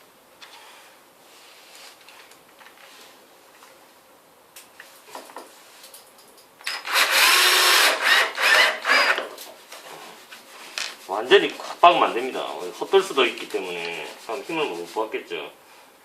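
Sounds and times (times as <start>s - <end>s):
drill motor whine: 6.7s - 9.2s.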